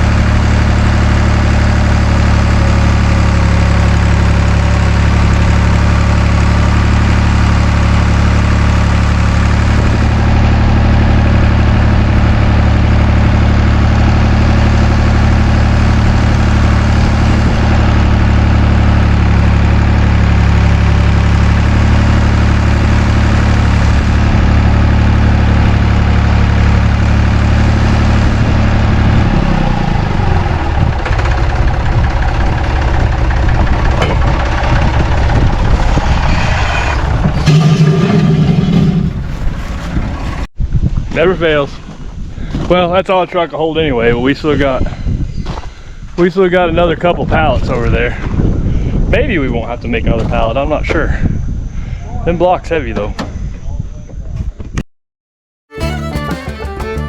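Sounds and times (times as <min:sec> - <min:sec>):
large engine idling: 0:00.0 - 0:40.5.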